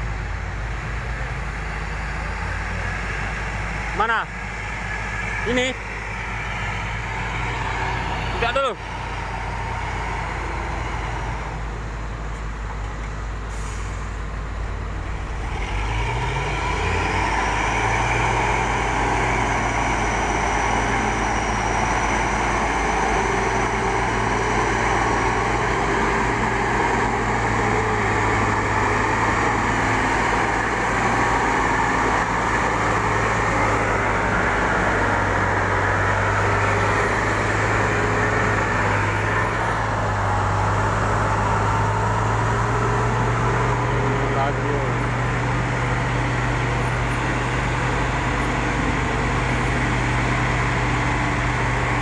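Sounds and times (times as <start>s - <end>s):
excavator diesel engine revving: 0.0s - 52.0s.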